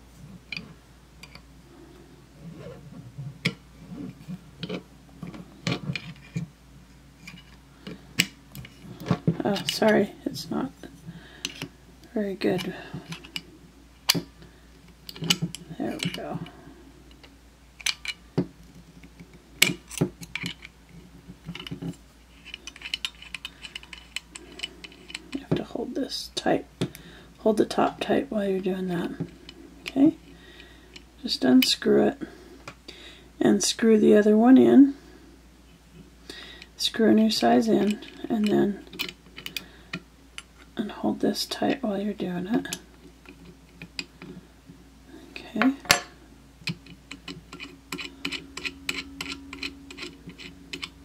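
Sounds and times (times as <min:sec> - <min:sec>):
clicks and scrapes of metal tool: 0:21.5 - 0:25.3, 0:46.7 - 0:51.0.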